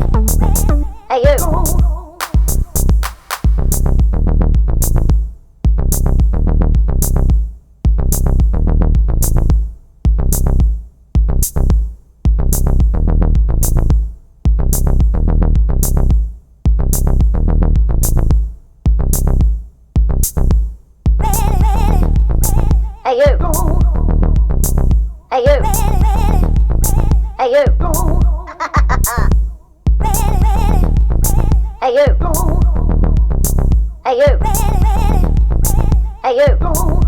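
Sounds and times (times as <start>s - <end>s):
heavy synth bass line: 0.0s - 5.2s, 21.2s - 37.0s
drum machine beat: 0.0s - 37.0s.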